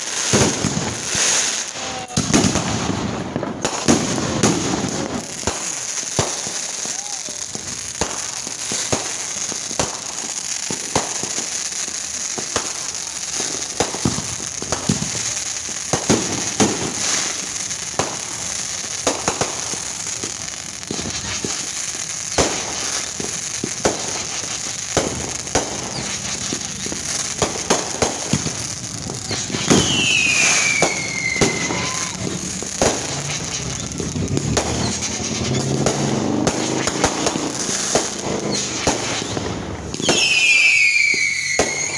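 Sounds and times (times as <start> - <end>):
fireworks bangs and crackling: 0.0 - 41.9
firework whistle falling: 25.0 - 37.9, 38.5 - 41.9.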